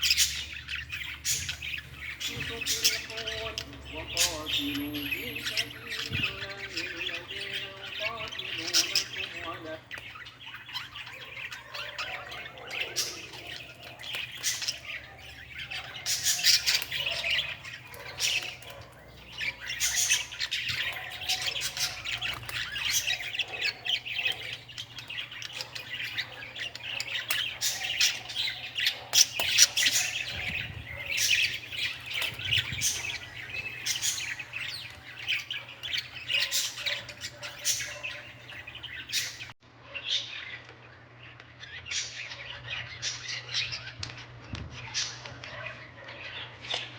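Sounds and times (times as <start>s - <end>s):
small birds chirping: 0.0s - 46.9s.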